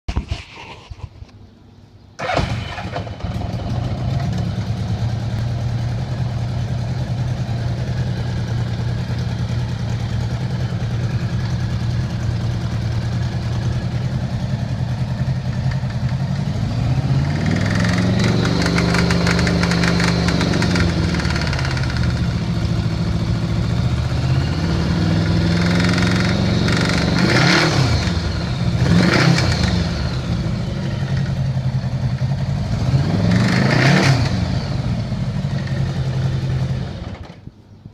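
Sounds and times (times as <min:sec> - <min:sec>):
motorcycle engine idling and revving: 0:02.2 - 0:37.9
engine knocking noise: 0:17.3 - 0:23.5, 0:25.1 - 0:30.2.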